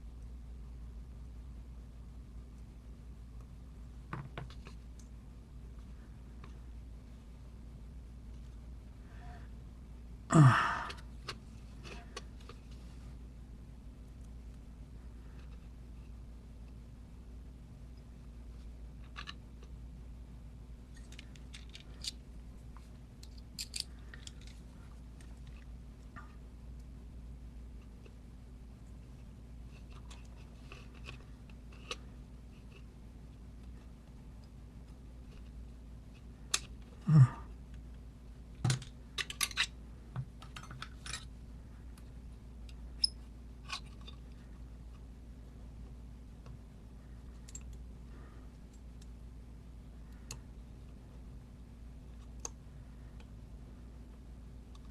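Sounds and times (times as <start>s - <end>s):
steady low hum: 0.0s - 54.9s
small clicks and taps of lock parts: 21.0s - 22.2s, 23.2s - 24.6s, 38.6s - 41.3s, 47.3s - 47.8s.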